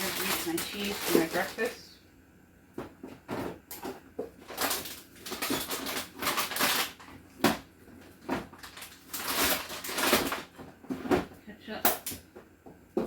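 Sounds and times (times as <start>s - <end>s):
plastic rustling and crinkling: 0.0s - 1.8s, 2.8s - 11.4s.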